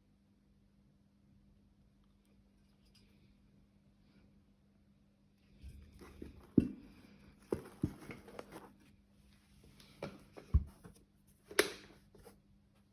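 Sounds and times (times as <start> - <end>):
rustling: 5.6 - 9.0.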